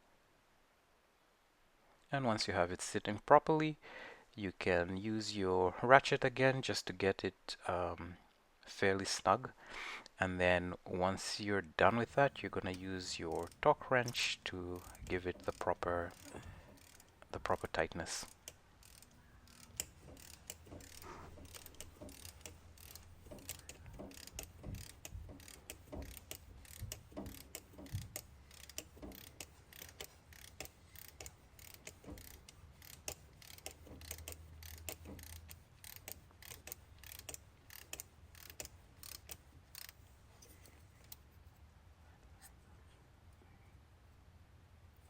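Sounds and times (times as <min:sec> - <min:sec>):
ratchet wrench clicking: 0:12.7 - 0:41.2.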